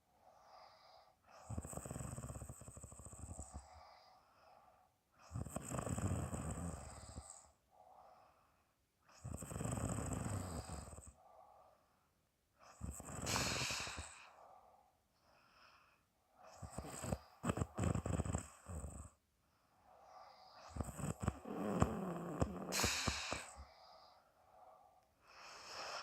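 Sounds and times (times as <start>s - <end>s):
woman snoring: 0.4s - 4.0s, 5.3s - 7.5s, 9.2s - 11.2s, 12.7s - 14.3s, 16.5s - 19.2s, 20.2s - 24.1s.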